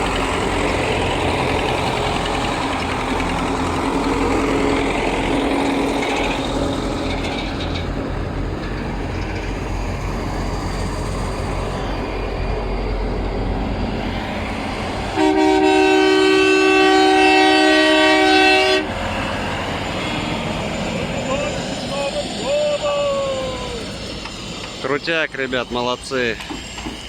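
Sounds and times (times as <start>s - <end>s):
loud multi-tone horn: 15.1s - 18.9s.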